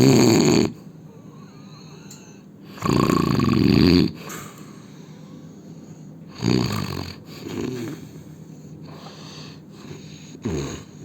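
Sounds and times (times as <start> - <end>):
man snoring: 0.0 - 0.8, 2.7 - 4.2, 6.3 - 8.0, 10.3 - 11.0.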